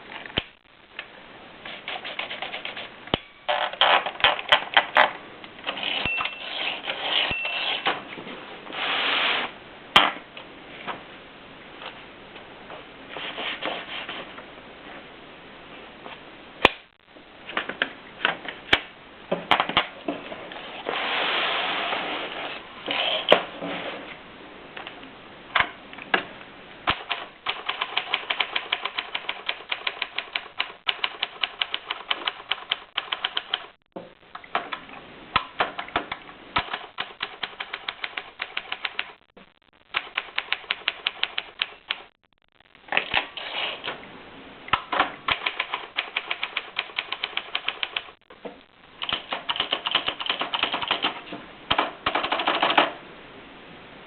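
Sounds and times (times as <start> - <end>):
typewriter keystrokes: 26.9 - 33.7, 36.6 - 39.2, 45.3 - 48.1, 49.0 - 52.9.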